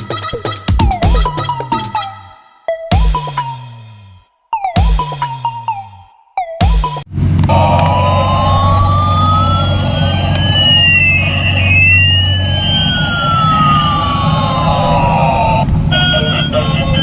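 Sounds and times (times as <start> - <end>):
low hum: 7.1 - 16.0
gliding electronic siren tones: 7.5 - 16.6.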